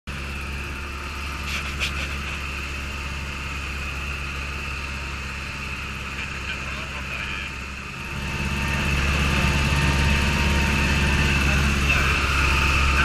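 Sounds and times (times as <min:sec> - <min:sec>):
aircraft piston engine running: 0:00.1 - 0:13.0.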